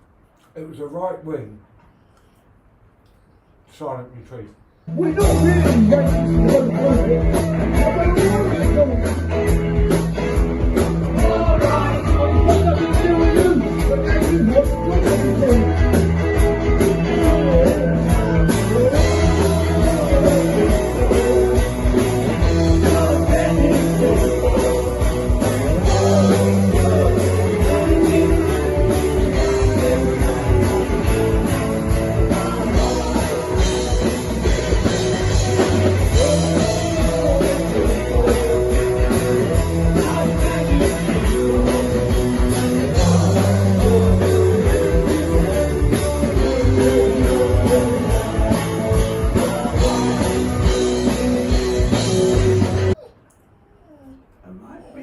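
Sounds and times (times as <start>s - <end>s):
guitar-led rock music: 4.9s - 53.0s.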